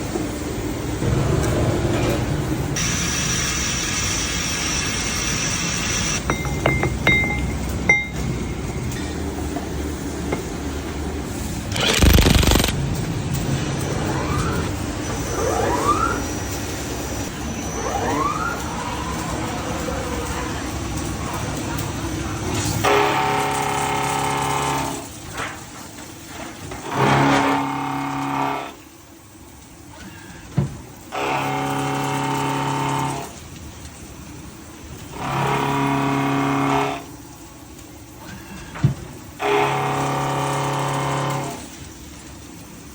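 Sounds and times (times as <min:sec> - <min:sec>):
milling machine hum: 0:00.7 - 0:15.1
machine running: 0:00.9 - 0:06.3, 0:11.0 - 0:21.0
loud burst of noise: 0:01.0 - 0:06.2, 0:11.6 - 0:13.0
milling cutter humming: 0:11.7 - 0:12.8.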